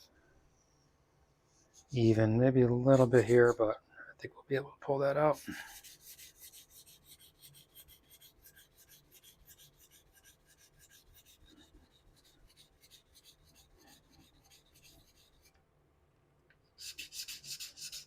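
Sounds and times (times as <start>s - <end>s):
razor rasping on whetstone: 5.4s - 15.5s, 16.8s - 18.0s.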